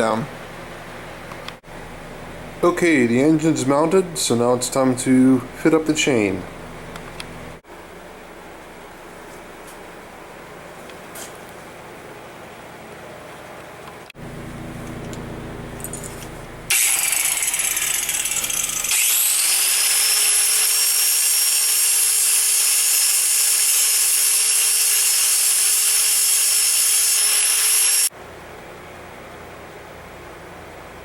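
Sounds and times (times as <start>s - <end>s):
power tool grinding and whining: 14.2s - 28.1s.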